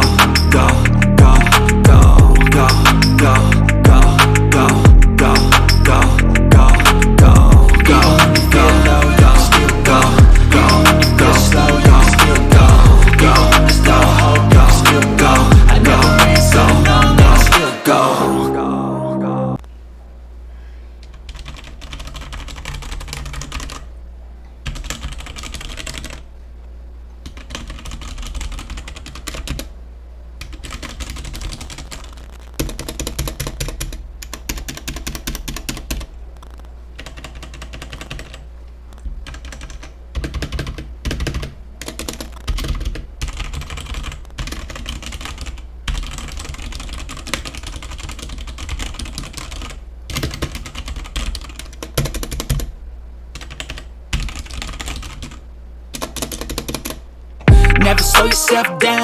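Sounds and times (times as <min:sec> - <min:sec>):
steady low hum: 0:00.0 - 0:18.0
mechanical keyboard keys clacking: 0:21.1 - 0:23.9, 0:24.6 - 0:26.2, 0:27.2 - 0:29.7, 0:30.4 - 0:36.1, 0:37.0 - 0:38.4, 0:39.2 - 0:52.7, 0:56.0 - 0:57.0.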